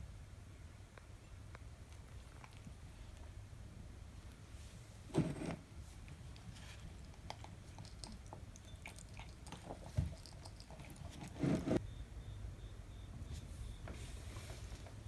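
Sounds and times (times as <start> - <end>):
cat chewing: 1.8 - 3.4, 6.0 - 11.4.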